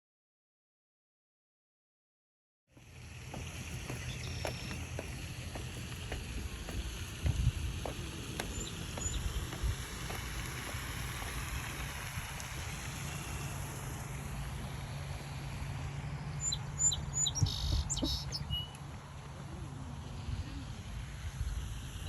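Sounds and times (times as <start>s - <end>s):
small bird chirping: 3.4s - 7.1s, 7.9s - 10.6s, 16.5s - 18.7s.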